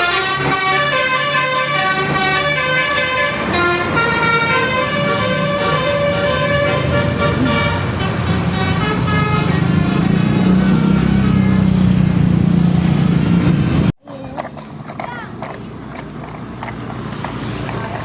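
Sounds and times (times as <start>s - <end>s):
multi-tone bus horn tune: 0.0s - 11.7s
bus engine running: 0.0s - 18.0s.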